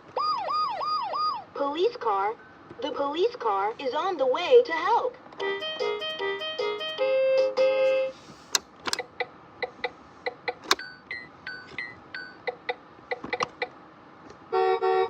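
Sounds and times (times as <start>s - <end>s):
toy musical jingle: 5.4s - 7.7s
plastic button clicks: 8.5s - 9.0s, 10.5s - 10.9s.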